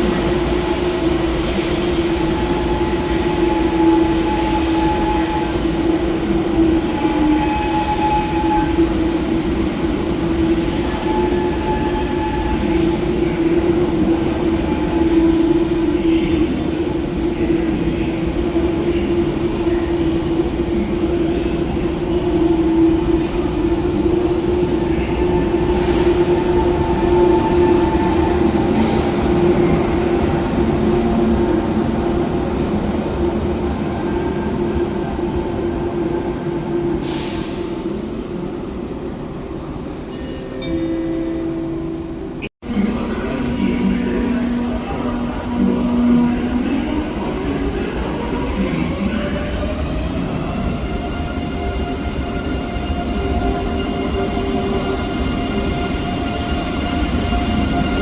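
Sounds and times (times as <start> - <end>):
train wheels squealing: 1.4 - 5.8, 6.8 - 9.0.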